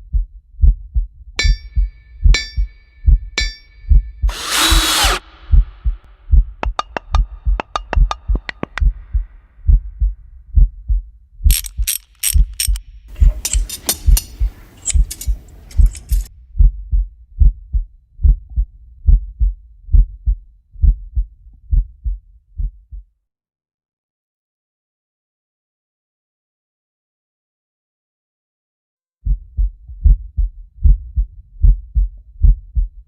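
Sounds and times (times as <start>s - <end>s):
heartbeat thumps: 0.0s - 11.6s, 12.4s - 23.1s, 29.2s - 33.0s
sharp mechanical clicks: 4.3s - 5.2s, 11.5s - 12.8s
harsh high-pitched tool noise: 4.3s - 5.6s.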